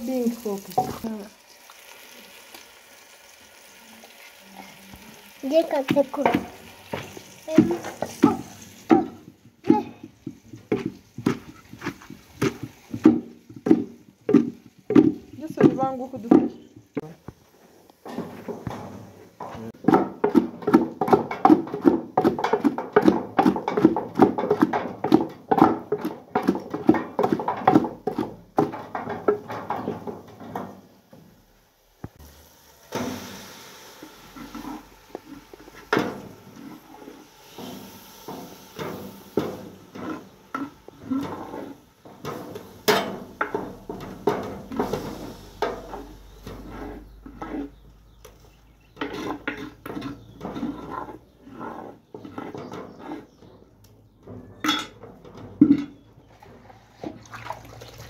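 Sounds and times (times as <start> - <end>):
pestle pounding in mortar: 5.8 - 17.1, 19.8 - 30.2.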